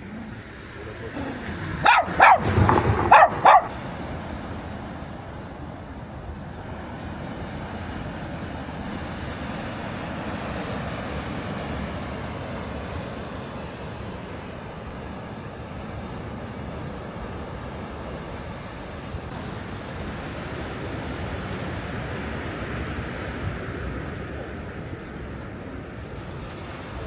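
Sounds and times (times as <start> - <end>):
dog barking: 0.0 - 3.7
steady rushing noise: 0.0 - 3.8.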